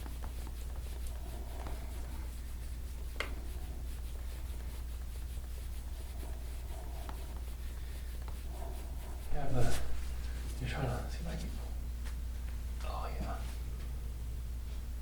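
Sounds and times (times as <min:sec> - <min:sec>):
hands rubbing on skin: 0:00.0 - 0:10.6
steady low hum: 0:00.0 - 0:15.0.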